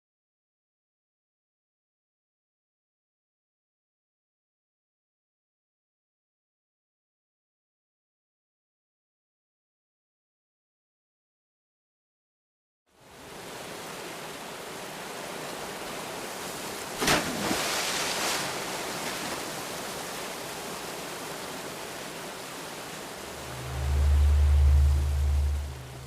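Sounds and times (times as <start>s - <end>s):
steady rushing noise: 22.9s - 26.0s.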